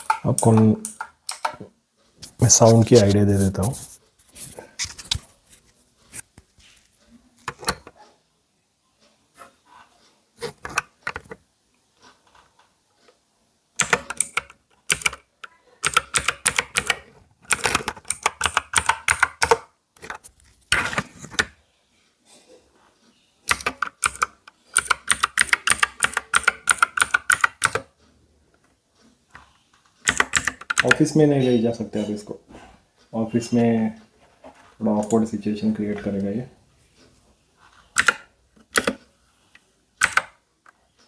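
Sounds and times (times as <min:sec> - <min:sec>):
mechanical keyboard keys clacking: 0:13.8 - 0:15.2, 0:15.8 - 0:19.6, 0:23.5 - 0:27.9, 0:30.0 - 0:31.1, 0:38.0 - 0:39.0, 0:40.0 - 0:40.3.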